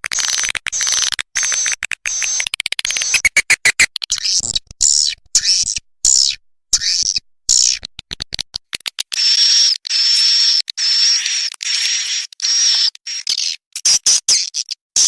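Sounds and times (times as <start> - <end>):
swiftlet chirps and clicking trills: 0.0 - 7.8.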